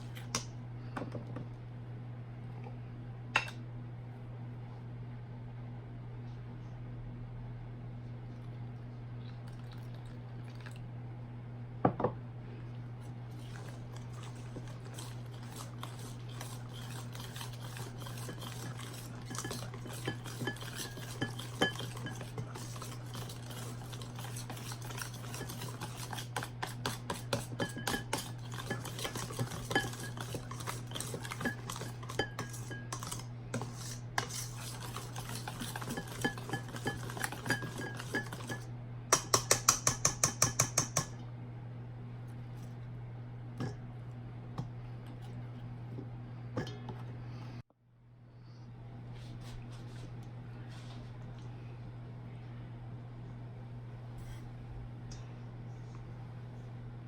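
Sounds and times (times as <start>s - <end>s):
steady low hum: 0.0s - 57.0s
utensil clinking against bowl: 13.4s - 41.2s.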